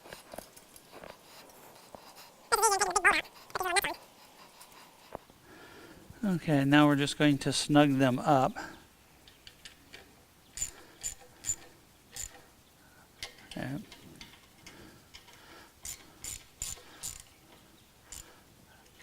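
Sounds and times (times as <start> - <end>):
ratchet wrench clicking: 10.6 - 12.4, 15.1 - 17.3, 18.1 - 18.3.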